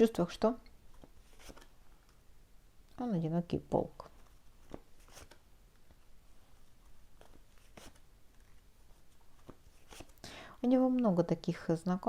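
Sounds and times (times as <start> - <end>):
cards rustling and tapping: 0.9 - 2.2, 4.1 - 10.2.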